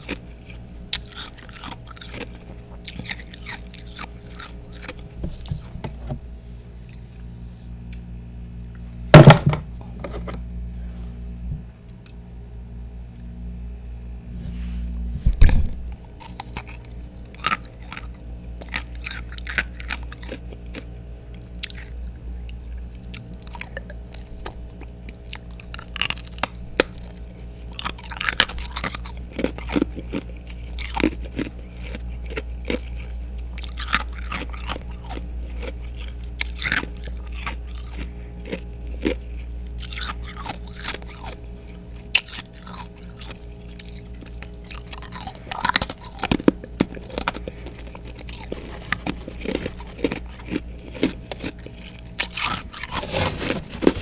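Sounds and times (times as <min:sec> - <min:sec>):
person crunching ice: 0:45.1 - 0:54.0.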